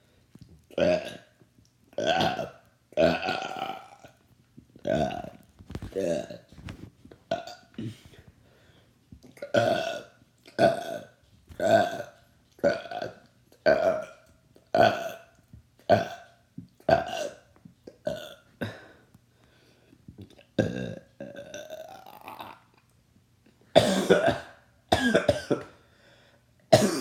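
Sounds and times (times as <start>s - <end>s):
person burping: 0.7s - 1.3s, 2.0s - 4.1s, 4.8s - 6.5s, 7.3s - 8.0s, 9.4s - 15.3s, 15.9s - 16.3s, 16.9s - 18.9s, 20.6s - 22.7s, 26.7s - 27.0s.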